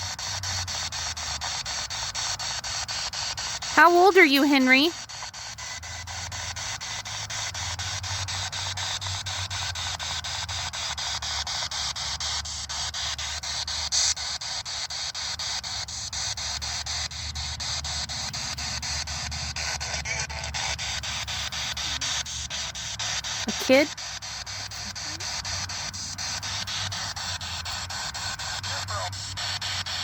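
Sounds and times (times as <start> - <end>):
radio static pulsing: 6.1 - 30.0.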